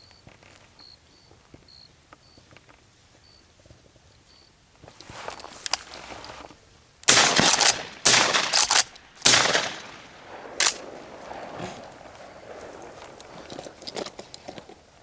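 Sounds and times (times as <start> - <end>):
dry brush crackling and rustling: 4.8 - 9.8, 10.4 - 15.0.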